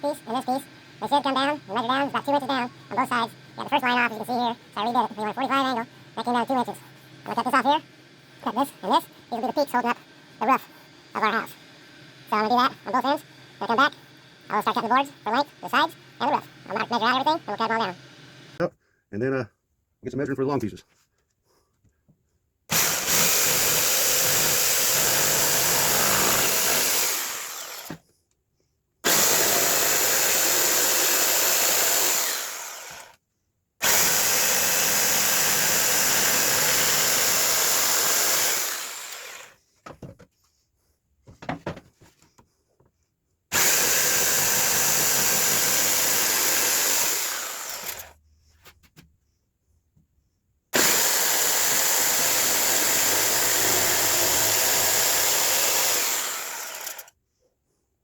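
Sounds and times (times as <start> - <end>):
power saw cutting wood: 0.0 - 18.6, 22.7 - 28.0, 29.0 - 33.2, 33.8 - 39.6, 43.5 - 48.2, 50.8 - 57.1.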